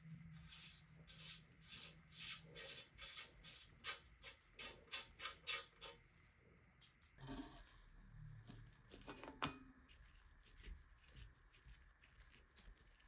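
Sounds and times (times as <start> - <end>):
hand scrubbing a hard surface: 0.0 - 6.2.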